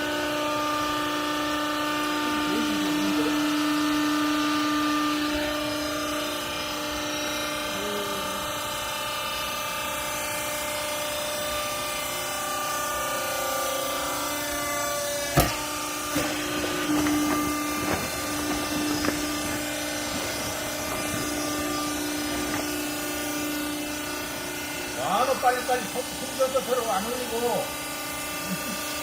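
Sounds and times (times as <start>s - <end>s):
baler motor humming: 0.0s - 29.0s
sharp knocks: 15.3s - 19.4s.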